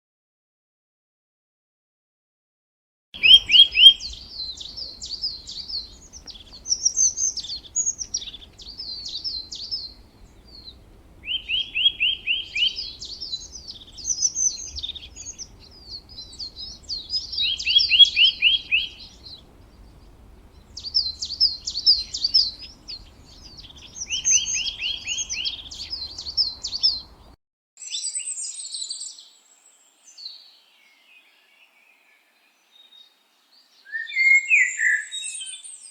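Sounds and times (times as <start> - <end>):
high-pitched bird chirping: 3.2 - 19.9, 20.5 - 27.2
songbird singing: 3.2 - 35.9.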